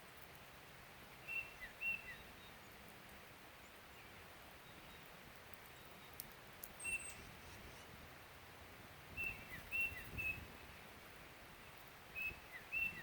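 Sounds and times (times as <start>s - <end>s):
faint outdoor background hiss: 0.0s - 13.0s
short bird chirps: 6.8s - 7.9s.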